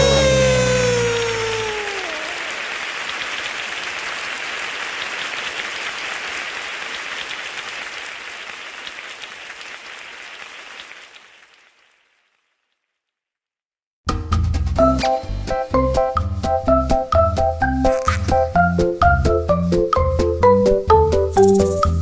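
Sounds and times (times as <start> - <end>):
crowd applause: 0.0 - 11.7.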